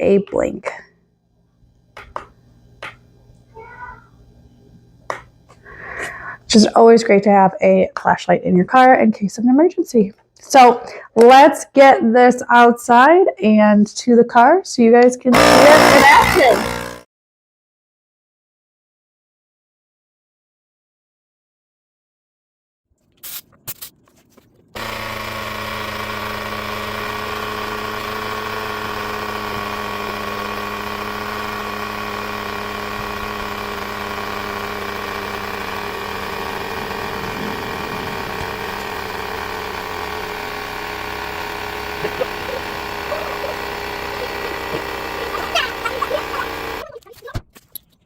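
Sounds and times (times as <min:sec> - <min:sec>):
air compressor buzzing drone: 0:15.3 - 0:17.1, 0:24.8 - 0:46.8.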